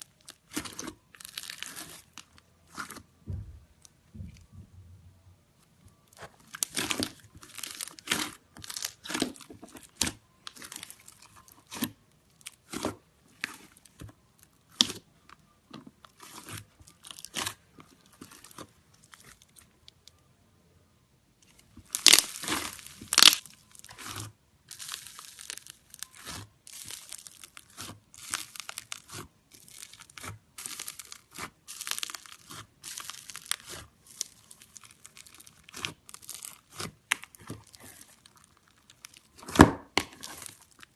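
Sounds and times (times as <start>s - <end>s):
slime crackling when squeezed: 0.0s - 3.0s, 6.4s - 13.9s, 21.9s - 40.9s.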